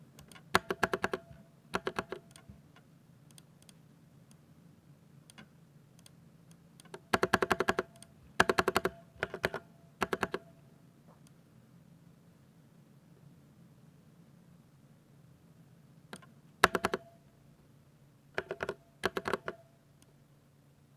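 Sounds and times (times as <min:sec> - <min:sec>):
mechanical keyboard typing: 0:00.2 - 0:02.5, 0:06.9 - 0:10.5, 0:16.6 - 0:17.1, 0:18.4 - 0:19.6.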